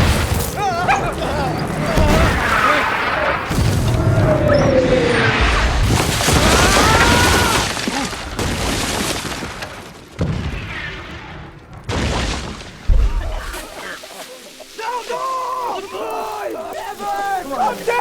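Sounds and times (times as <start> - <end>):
bombs exploding: 0.0 - 13.8
shattering debris: 0.0 - 13.8.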